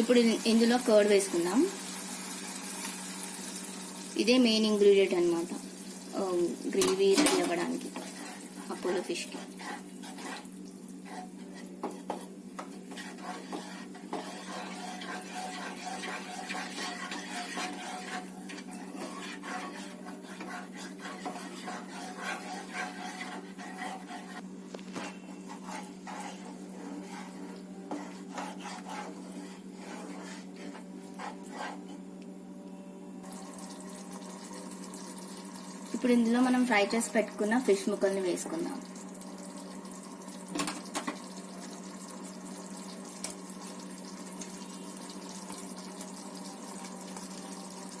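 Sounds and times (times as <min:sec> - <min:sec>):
spoon scraping a pan: 0:06.6 - 0:32.0.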